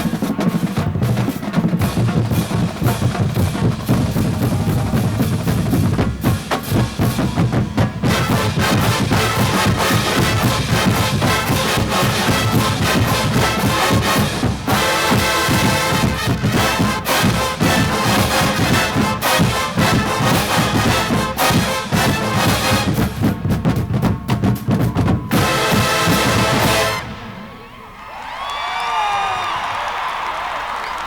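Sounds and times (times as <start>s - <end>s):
marching drums: 0.0s - 27.6s
massed brass: 1.8s - 24.4s, 25.3s - 27.7s.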